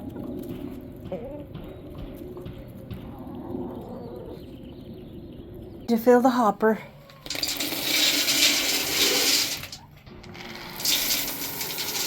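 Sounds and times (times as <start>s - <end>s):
grain pouring into feeder: 7.2s - 12.0s.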